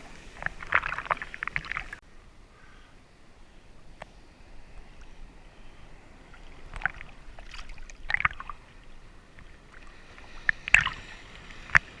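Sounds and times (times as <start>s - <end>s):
water sloshing and splashing: 0.0s - 2.0s, 6.2s - 12.0s
background water wash: 0.0s - 12.0s.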